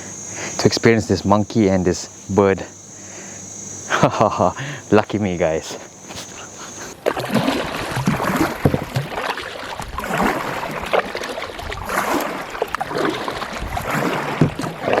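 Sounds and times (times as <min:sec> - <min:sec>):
water splashing over rocks: 0:06.9 - 0:15.0.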